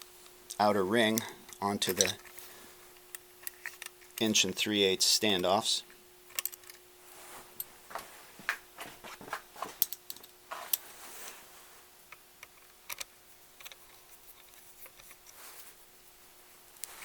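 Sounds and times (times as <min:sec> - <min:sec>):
faint steady hum: 0:00.0 - 0:17.0
small metal parts clicking: 0:01.1 - 0:02.4, 0:03.1 - 0:04.4, 0:06.3 - 0:06.8, 0:09.8 - 0:10.3, 0:12.4 - 0:15.3.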